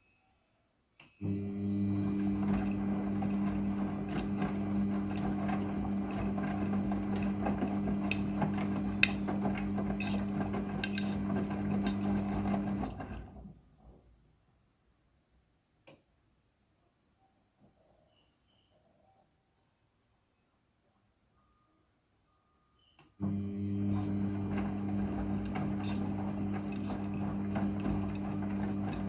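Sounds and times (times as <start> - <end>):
washing machine hum: 1.2 - 13.9, 23.2 - 29.0.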